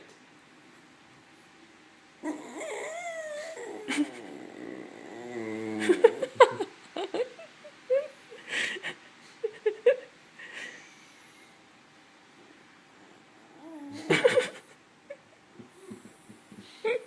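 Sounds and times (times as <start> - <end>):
dog groaning: 2.2 - 6.2
dog whining and whimpering: 2.2 - 6.2.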